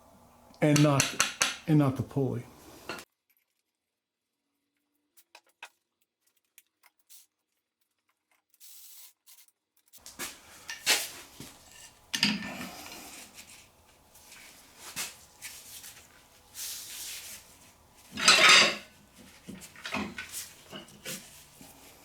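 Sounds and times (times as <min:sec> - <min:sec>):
sharp metal knocks: 0:00.7 - 0:01.8
metal tools clinking and scraping: 0:10.0 - 0:22.0.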